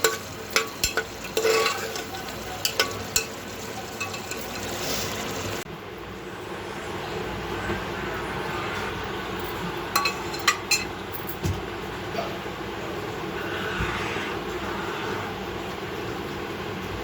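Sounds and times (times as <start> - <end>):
beef cooking in a pot: 0.0 - 5.6, 9.9 - 10.9
utensil clinking against pot: 0.0 - 5.6, 10.0 - 11.0.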